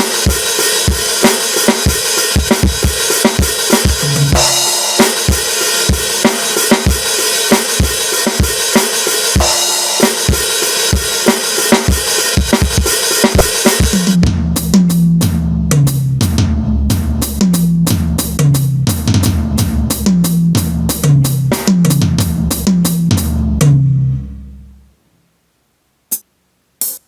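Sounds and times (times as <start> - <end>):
tom fill: 0.0 - 7.7
bass drum and snare beat: 0.0 - 23.9.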